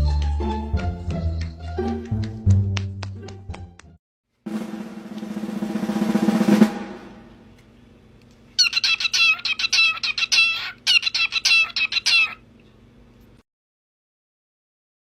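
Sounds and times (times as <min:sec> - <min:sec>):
drum roll: 0:04.5 - 0:07.5
bird chirping: 0:08.6 - 0:12.4.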